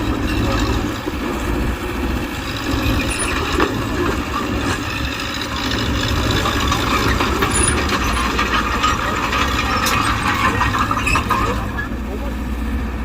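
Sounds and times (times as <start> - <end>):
diesel engine running: 0.0 - 13.0
metallic clanking and rattling: 2.3 - 12.3.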